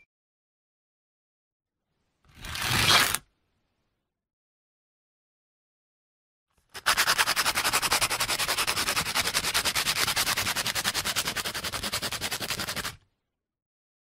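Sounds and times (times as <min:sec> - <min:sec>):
sandpaper rubbing: 0:06.8 - 0:13.0.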